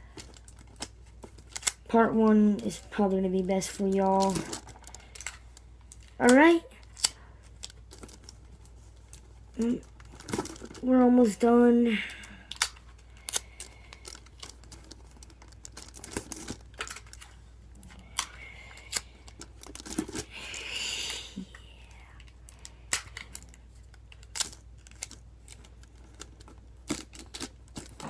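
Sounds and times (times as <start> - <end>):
craft materials clicking and crinkling: 3.6 - 11.4, 12.1 - 20.6, 22.0 - 28.0
tape tearing or rustling: 12.5 - 17.4, 22.9 - 28.0.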